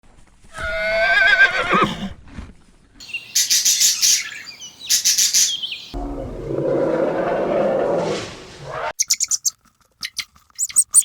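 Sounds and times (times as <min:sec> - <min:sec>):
high rapid bird chirping: 0:03.0 - 0:06.0, 0:09.0 - 0:11.0.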